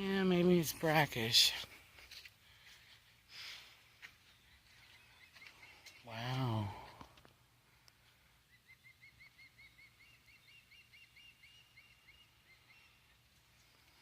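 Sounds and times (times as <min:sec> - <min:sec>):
faint bird chirping: 0:01.2 - 0:07.0, 0:07.6 - 0:14.0.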